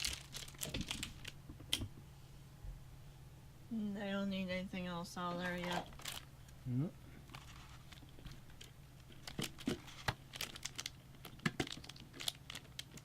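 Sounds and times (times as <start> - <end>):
plastic packaging crinkling: 0.0 - 1.4, 5.4 - 6.3, 7.3 - 13.0
faint low hum: 0.0 - 13.0.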